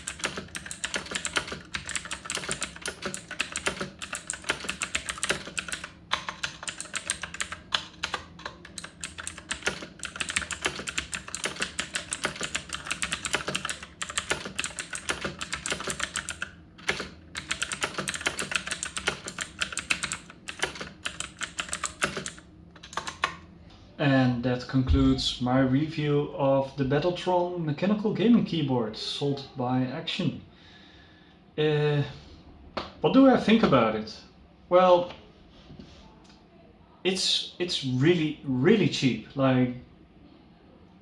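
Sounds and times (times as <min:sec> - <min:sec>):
fast clicky keyboard typing: 0:00.0 - 0:23.4.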